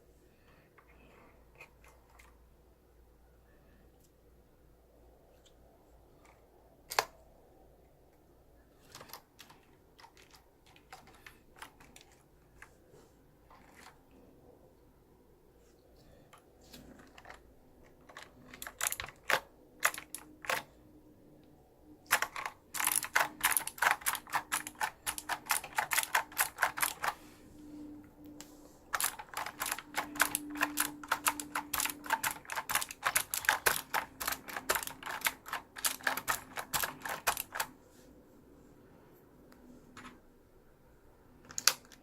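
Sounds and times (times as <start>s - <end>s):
computer keyboard keys clacking: 8.9s - 12.2s, 18.0s - 20.7s, 22.1s - 27.2s, 28.9s - 37.7s.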